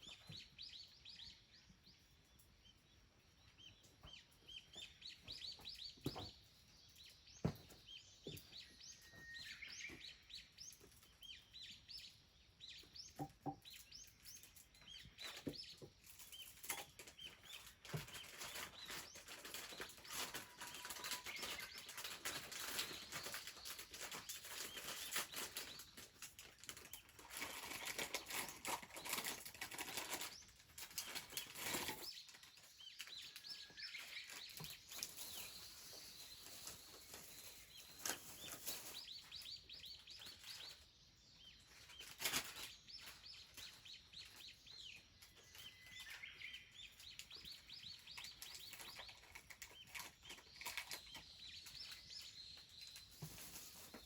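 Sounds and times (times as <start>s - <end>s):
small birds calling: 0.0s - 54.0s.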